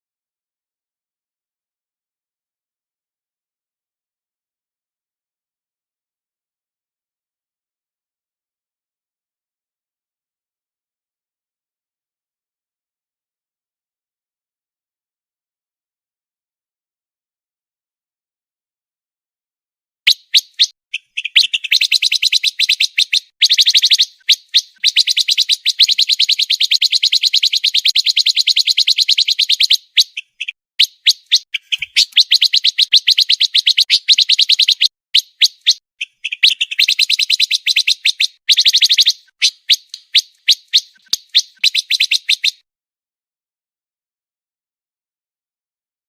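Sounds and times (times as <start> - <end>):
bird singing rapid high chirps: 20.1 - 42.6.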